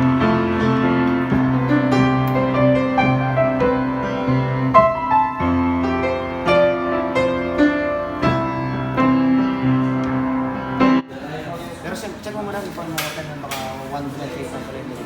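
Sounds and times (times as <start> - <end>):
piano background music: 0.0 - 11.1.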